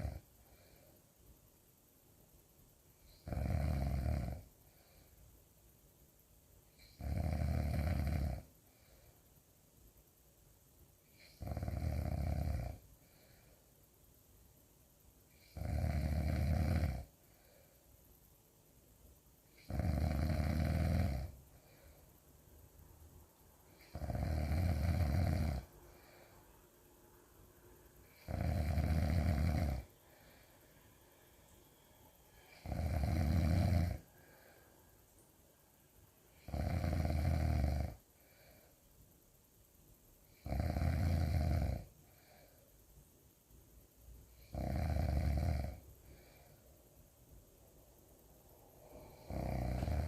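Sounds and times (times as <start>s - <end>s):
loud snoring: 0.0s - 0.2s, 3.1s - 4.5s, 6.8s - 8.5s, 11.2s - 12.8s, 15.4s - 17.1s, 19.6s - 21.4s, 23.8s - 26.2s, 28.0s - 30.4s, 32.4s - 34.1s, 36.4s - 38.0s, 40.4s - 41.9s, 44.4s - 46.4s, 48.9s - 50.0s.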